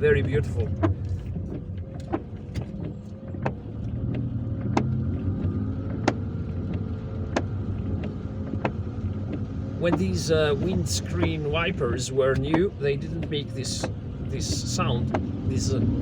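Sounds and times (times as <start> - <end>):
road and engine rumble: 0.0 - 16.0.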